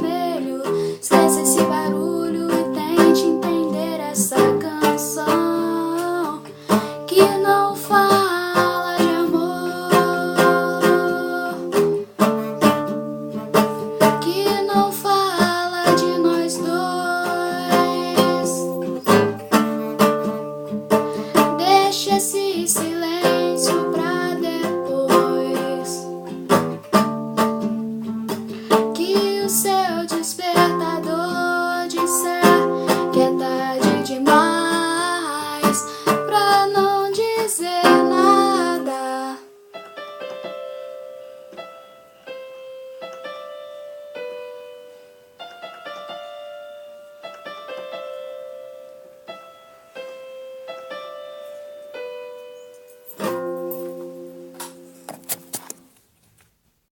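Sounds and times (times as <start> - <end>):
wordless singing: 0.0 - 11.7, 28.9 - 39.5
ukulele strumming: 0.0 - 39.4, 53.0 - 55.9
single-note ukulele melody: 37.8 - 39.2.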